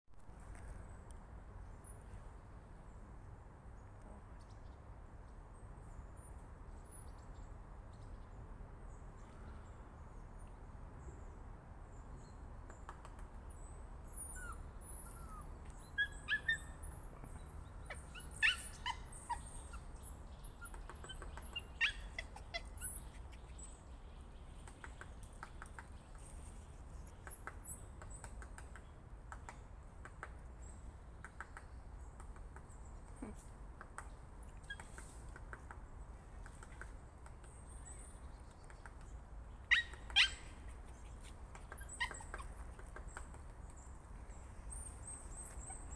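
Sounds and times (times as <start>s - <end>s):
small birds chirping: 3.8s - 45.9s
woodpecker pecking: 20.7s - 23.6s, 24.4s - 26.4s, 38.4s - 44.0s.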